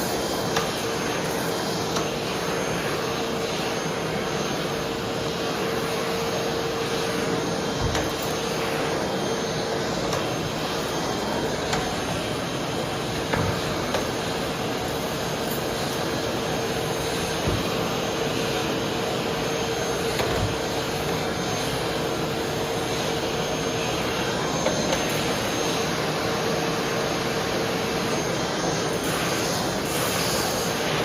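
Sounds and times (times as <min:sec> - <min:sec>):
vacuum cleaner running: 0:00.0 - 0:31.0
vacuum cleaner knocks on floor: 0:07.8 - 0:08.2, 0:17.4 - 0:17.8.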